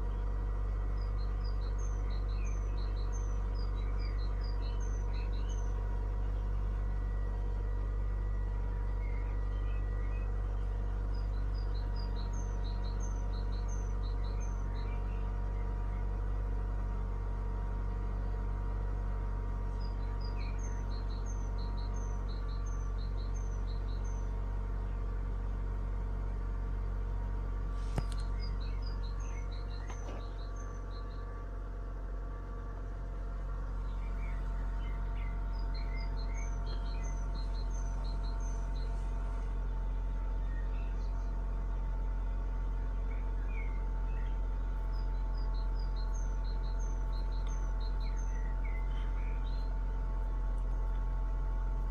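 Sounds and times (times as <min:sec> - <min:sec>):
birds chirping: 0:00.0 - 0:51.9
car engine idling: 0:00.0 - 0:51.9
click: 0:28.0 - 0:28.4, 0:47.4 - 0:47.6.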